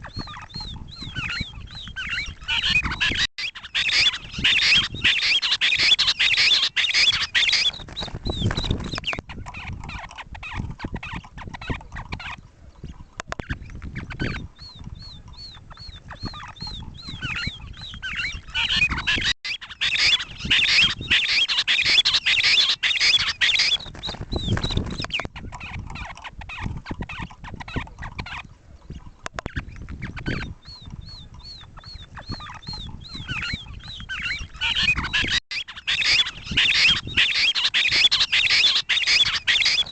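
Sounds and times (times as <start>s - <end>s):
harsh rapidly repeated bird calls: 0.0s - 39.9s.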